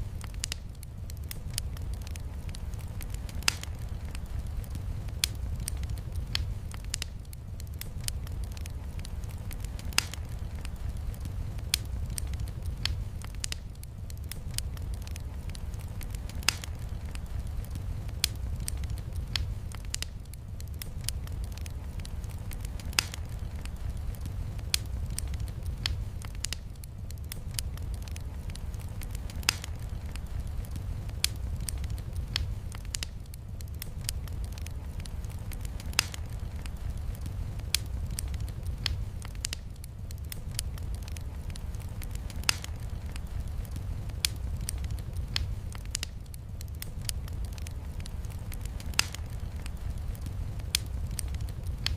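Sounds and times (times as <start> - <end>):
wood fire crackling: 0.0 - 51.9.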